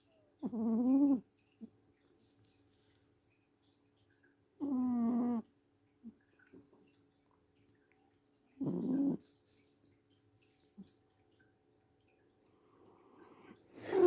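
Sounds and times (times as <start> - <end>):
cat snoring: 0.4 - 1.2, 4.6 - 5.4, 8.6 - 9.2, 12.8 - 14.0.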